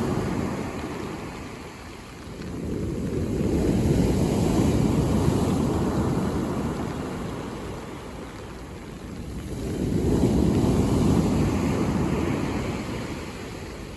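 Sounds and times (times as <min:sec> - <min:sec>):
sea waves breaking on beach: 0:00.0 - 0:08.2.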